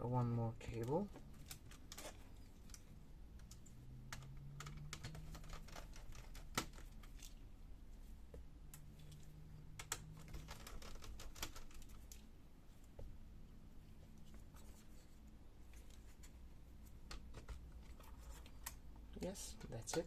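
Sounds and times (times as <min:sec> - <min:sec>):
faint low hum: 0:00.0 - 0:20.0
clicks and taps of laptop parts: 0:03.4 - 0:07.3, 0:17.0 - 0:18.8.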